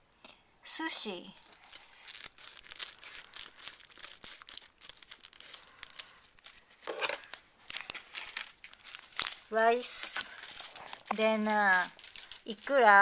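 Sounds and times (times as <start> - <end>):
packaging crinkling and rustling: 1.4 - 13.0.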